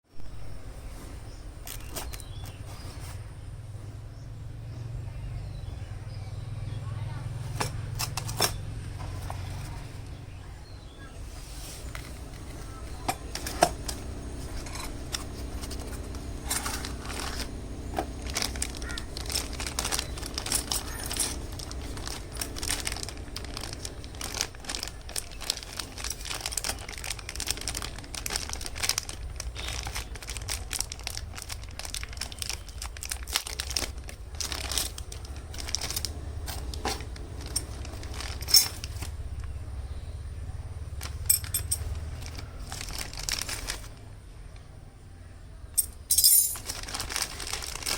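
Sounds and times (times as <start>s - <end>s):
low steady hum: 0.1s - 47.9s
packaging crinkling and tearing: 11.8s - 39.4s, 41.9s - 44.2s, 46.6s - 47.9s.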